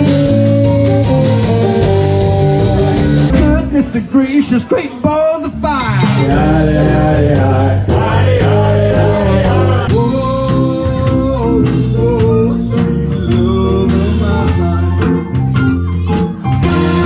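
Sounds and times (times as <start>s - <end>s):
drum kit: 0.0s - 4.1s, 5.6s - 17.0s
lead melody notes: 0.0s - 4.1s, 12.5s - 17.0s
bass guitar: 0.0s - 17.0s.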